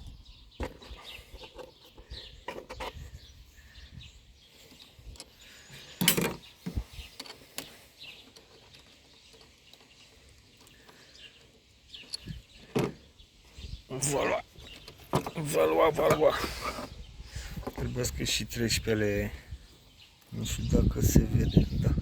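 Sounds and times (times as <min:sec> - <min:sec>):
birds chirping: 0:00.0 - 0:22.0
hand tools clicking and knocking: 0:04.7 - 0:13.0.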